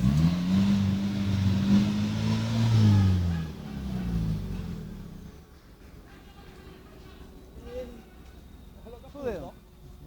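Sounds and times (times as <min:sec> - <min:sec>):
engine revving: 0:00.0 - 0:05.4.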